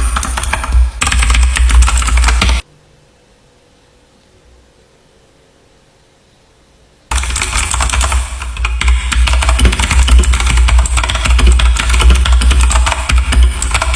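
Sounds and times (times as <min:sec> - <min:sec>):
clicky mechanical keyboard typing: 0:00.0 - 0:02.6, 0:07.1 - 0:13.9.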